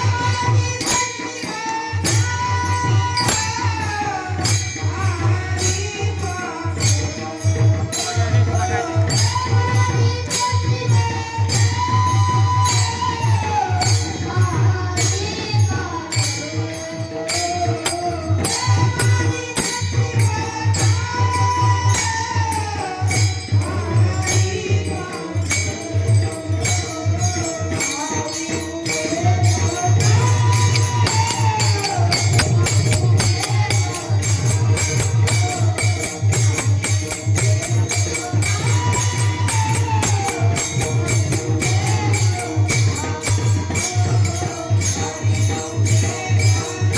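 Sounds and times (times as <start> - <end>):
hand cymbals striking: 0.0 - 46.9
drum beat: 29.4 - 44.4.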